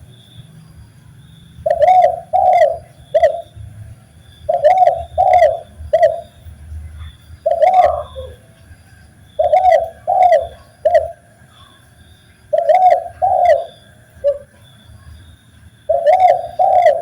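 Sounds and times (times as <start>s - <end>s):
dove cooing: 1.6s - 3.7s, 4.4s - 6.4s, 7.0s - 8.4s, 9.4s - 11.8s, 12.5s - 14.6s, 15.9s - 17.0s.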